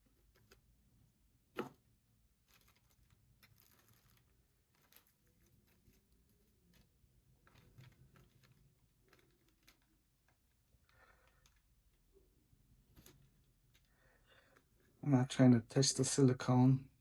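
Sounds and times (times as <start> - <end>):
hands handling packaging: 2.4 - 14.8.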